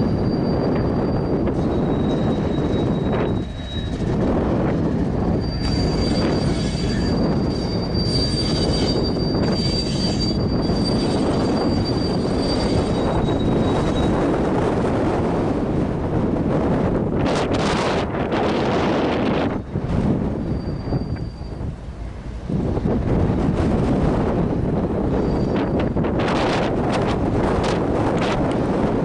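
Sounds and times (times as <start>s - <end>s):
high wheel squeal: 0.0s - 14.5s, 20.3s - 21.8s, 24.9s - 26.6s
freight train rumbling on rails: 0.0s - 29.0s.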